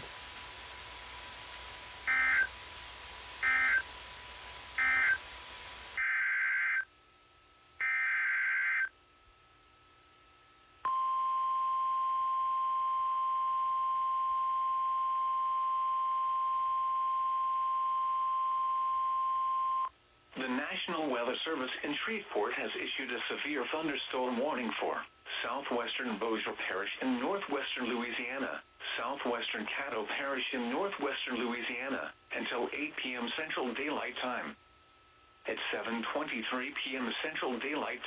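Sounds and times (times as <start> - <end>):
steady alarm tone: 2.1 - 2.5, 3.4 - 3.9, 4.8 - 5.2, 6.0 - 6.9, 7.8 - 9.0.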